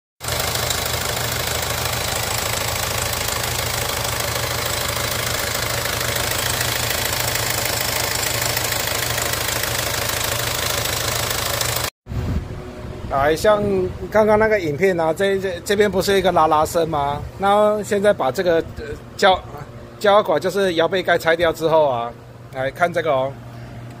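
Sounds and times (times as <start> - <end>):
diesel engine idling: 0.2 - 11.9.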